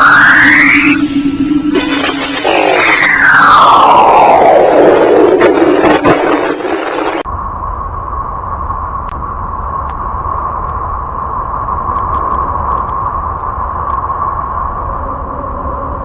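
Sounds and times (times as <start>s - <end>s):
electronic drone with held tone: 0.0s - 5.9s
low rumble: 0.0s - 16.0s.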